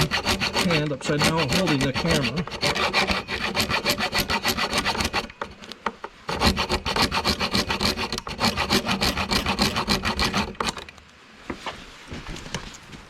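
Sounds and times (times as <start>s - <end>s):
hacksaw cutting metal: 0.0s - 5.7s, 6.3s - 10.9s.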